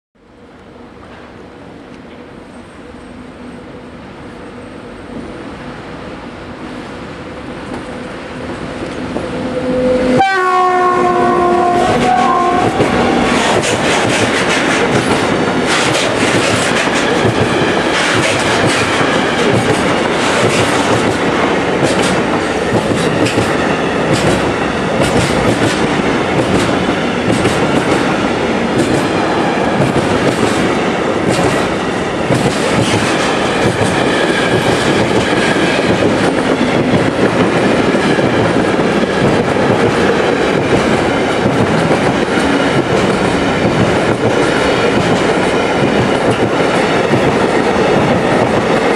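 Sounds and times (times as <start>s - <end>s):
freight train wagons clattering: 11.6s - 48.9s.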